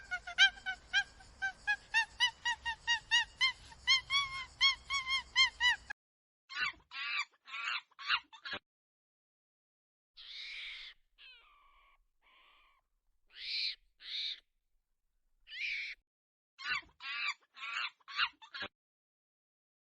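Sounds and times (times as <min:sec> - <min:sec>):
baby monkey squeaky calls: 0:00.0 - 0:05.9.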